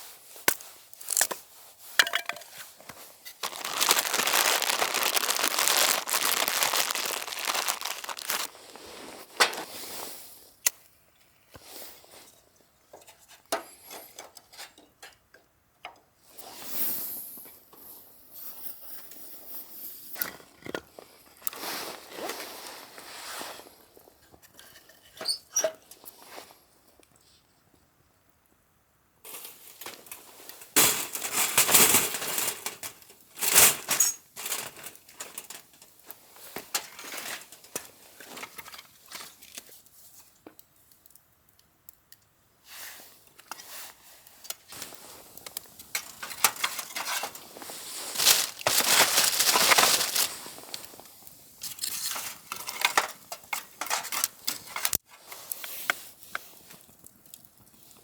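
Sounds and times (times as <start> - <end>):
crinkly packaging tearing: 0.5 - 1.4, 3.3 - 8.8, 46.0 - 50.7.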